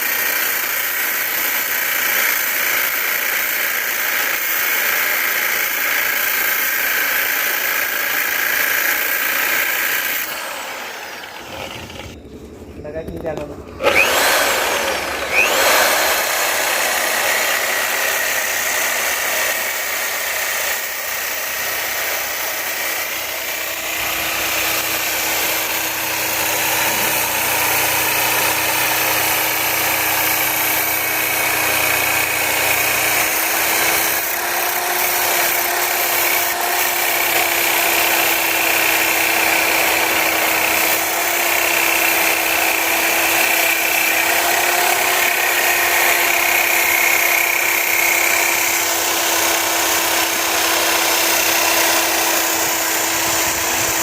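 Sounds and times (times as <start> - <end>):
electric drill motor whine: 0.2 - 54.0
hissing cut noise: 9.5 - 32.3.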